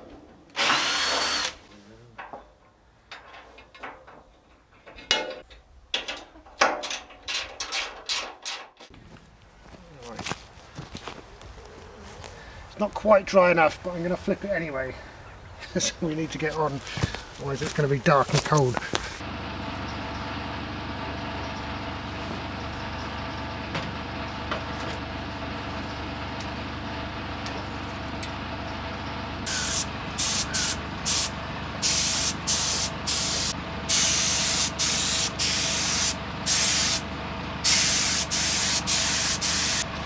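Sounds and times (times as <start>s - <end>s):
steady machine hum: 28.8s - 40.0s
paint spray gun hissing: 29.5s - 37.0s, 37.6s - 39.9s.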